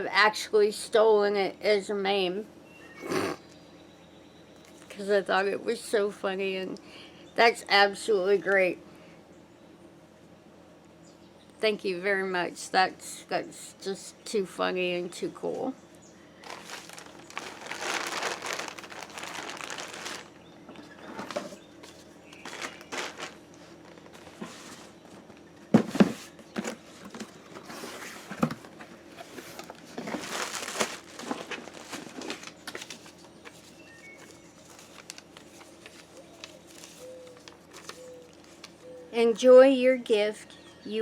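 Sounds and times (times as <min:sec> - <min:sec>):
packaging crinkling and rustling: 0:16.4 - 0:25.0, 0:26.0 - 0:38.9.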